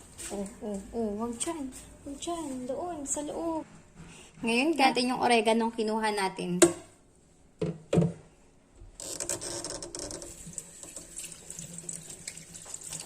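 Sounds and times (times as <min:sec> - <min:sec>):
kitchen tap water running into sink: 0:10.0 - 0:13.0.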